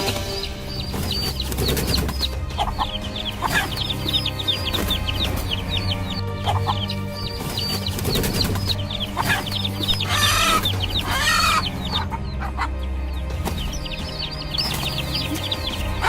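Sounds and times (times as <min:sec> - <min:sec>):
high falling bird chirps: 0:00.0 - 0:16.0
louder lower bird call: 0:08.6 - 0:12.7.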